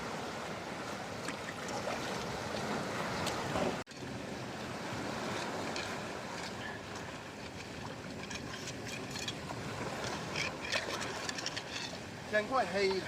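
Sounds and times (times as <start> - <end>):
sea surf on rocky shore: 0.0 - 13.0.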